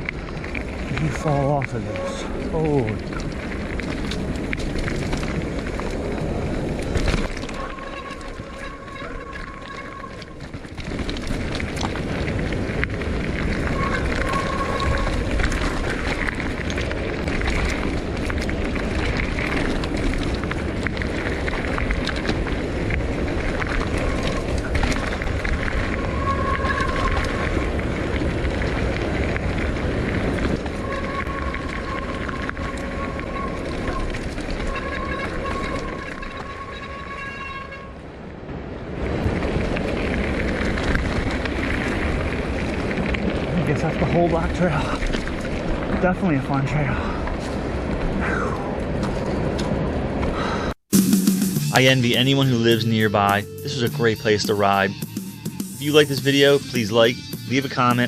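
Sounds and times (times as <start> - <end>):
bike rattling over rocks: 0.0 - 37.8, 38.9 - 48.2
high buzz: 50.9 - 58.0.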